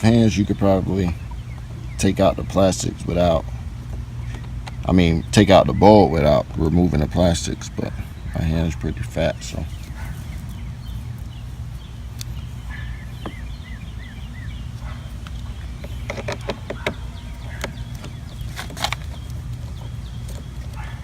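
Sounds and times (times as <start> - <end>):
steady low hum: 0.0 - 21.0
bird whistling: 9.8 - 16.2
sharp clicks and knocks: 15.2 - 20.9.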